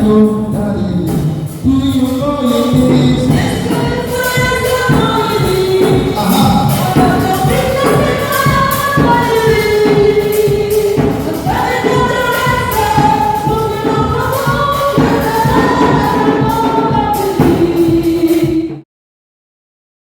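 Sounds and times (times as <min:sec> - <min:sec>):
band with steady beat: 0:00.0 - 0:18.8
gospel choir singing: 0:00.0 - 0:18.8.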